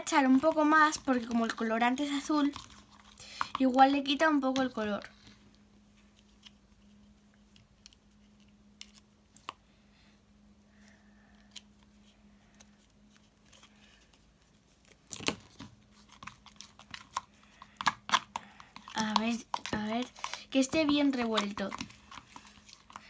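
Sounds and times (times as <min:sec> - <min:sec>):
faint steady hum: 0:00.0 - 0:23.0
spoon stirring glue in a bowl: 0:00.1 - 0:04.8, 0:16.0 - 0:23.0.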